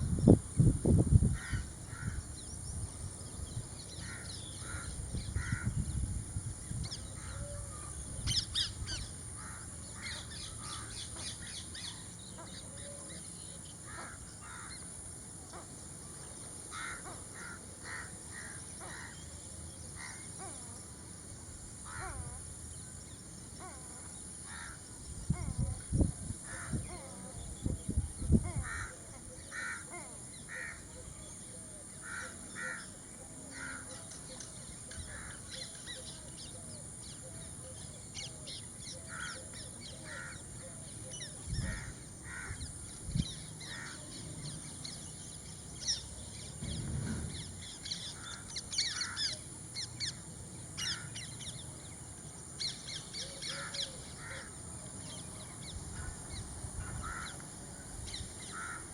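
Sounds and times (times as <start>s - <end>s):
crows cawing: 1.4s - 2.2s, 4.0s - 5.8s, 13.9s - 14.8s, 16.7s - 19.2s, 24.5s - 24.8s, 28.5s - 30.8s, 32.0s - 32.9s, 33.5s - 33.9s, 40.1s - 40.4s, 41.7s - 42.6s, 43.7s - 44.0s, 48.2s - 49.4s, 53.5s - 54.5s, 56.8s - 57.4s, 58.5s - 58.9s
low thumps: 46.6s - 47.7s.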